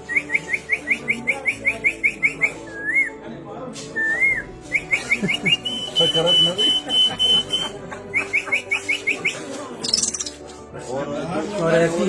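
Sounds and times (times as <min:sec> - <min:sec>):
man whistling birdsong imitation: 0:00.0 - 0:03.1, 0:04.0 - 0:10.3.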